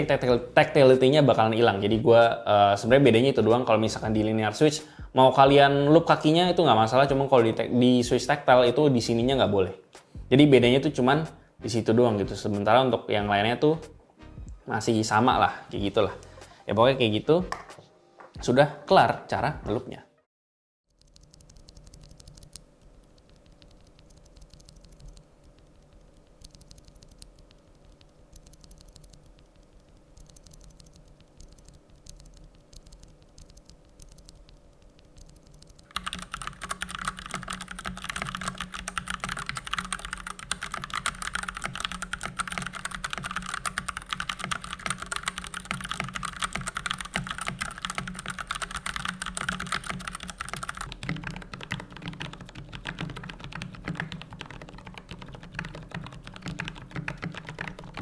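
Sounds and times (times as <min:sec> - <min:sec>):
typing on mechanical keyboard: 0:20.9 - 0:58.0.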